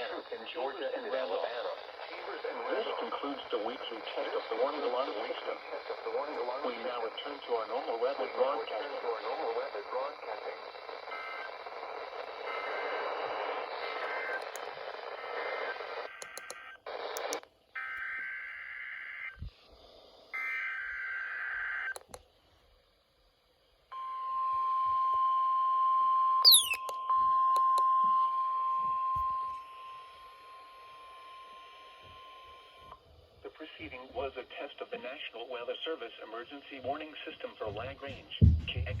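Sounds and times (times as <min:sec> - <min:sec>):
radio static hiss: 0:00.0 - 0:22.2, 0:29.4 - 0:39.0
warbling digital bursts: 0:26.5 - 0:26.8.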